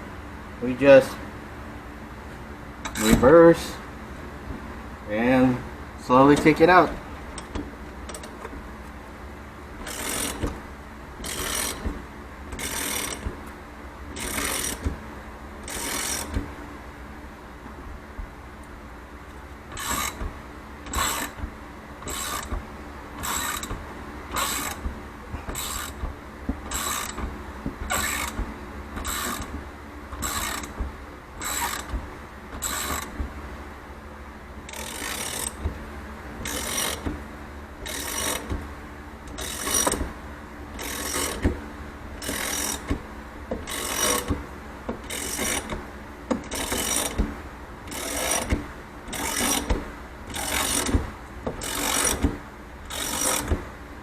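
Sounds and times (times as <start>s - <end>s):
ratchet wrench clicking: 11.2s - 11.8s, 12.6s - 13.3s, 19.8s - 20.2s, 20.9s - 21.4s, 22.0s - 22.5s, 23.2s - 24.8s, 26.7s - 27.2s, 29.0s - 29.5s, 30.2s - 30.8s, 32.6s - 33.1s, 46.5s - 47.2s.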